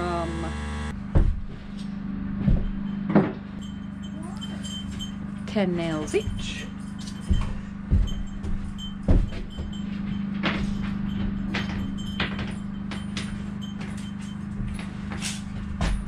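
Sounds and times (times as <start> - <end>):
steady low hum: 0.0 - 16.0
thump: 1.1 - 1.6
nails clinking: 2.7 - 16.0.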